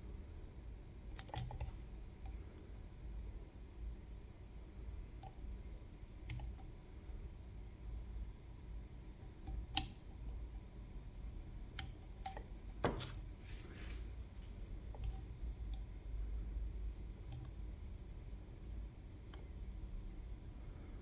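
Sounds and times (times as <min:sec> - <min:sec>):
small metal clicks and taps: 0:01.2 - 0:02.4, 0:06.3 - 0:06.7, 0:09.2 - 0:10.2, 0:11.8 - 0:13.2, 0:14.4 - 0:15.9, 0:17.3 - 0:17.6.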